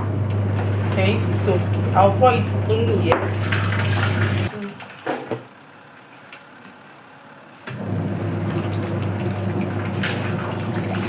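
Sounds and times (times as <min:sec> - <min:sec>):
washing machine knock: 0:00.0 - 0:05.5, 0:08.3 - 0:11.0
liquid sloshing: 0:00.0 - 0:06.3, 0:07.8 - 0:11.0
washing machine motor hum: 0:00.0 - 0:11.0.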